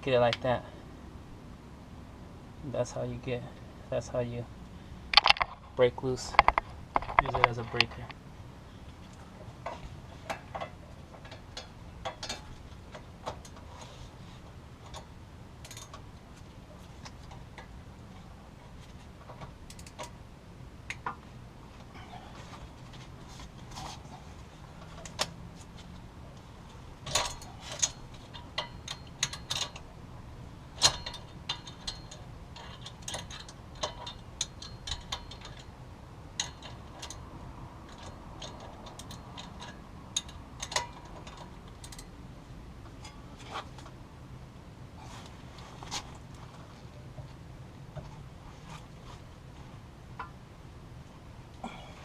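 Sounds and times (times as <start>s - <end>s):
metal wrenches clinking: 27.0s - 29.9s, 30.8s - 35.8s, 36.4s - 42.1s.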